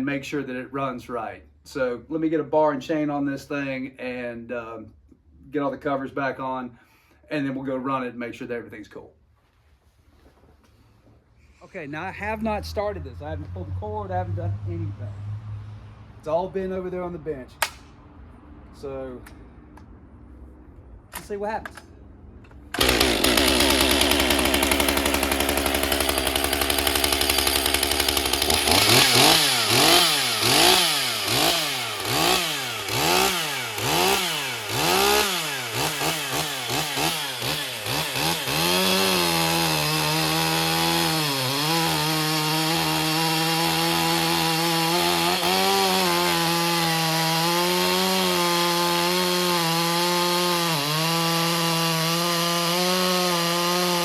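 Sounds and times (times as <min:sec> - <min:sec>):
chainsaw engine revving and idling: 0:12.2 - 0:15.2, 0:22.7 - 0:54.0.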